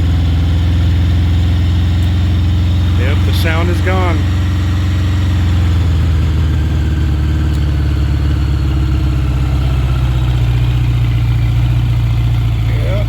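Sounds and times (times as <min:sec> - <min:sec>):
motorcycle engine idling: 0:00.0 - 0:13.0.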